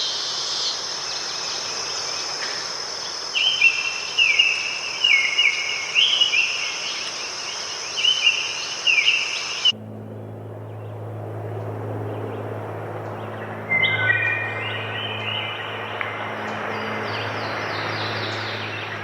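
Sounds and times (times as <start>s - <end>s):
insect trill and chirping: 0.0s - 9.7s
low steady hum: 9.6s - 19.0s.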